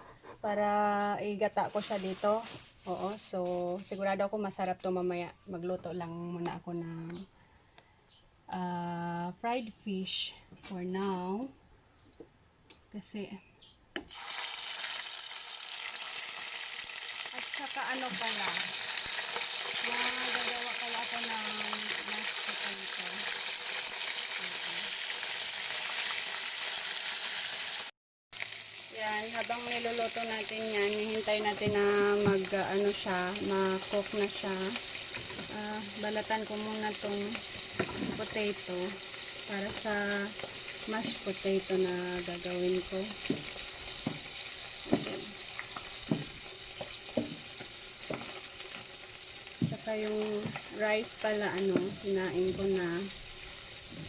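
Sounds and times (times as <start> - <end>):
fish sizzling in hot oil: 14.0 - 54.0.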